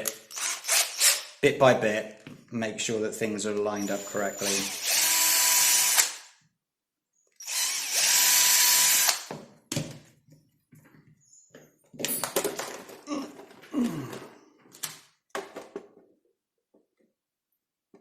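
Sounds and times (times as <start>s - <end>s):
electric drill whining: 0.3s - 1.2s, 3.8s - 6.2s, 7.4s - 9.3s.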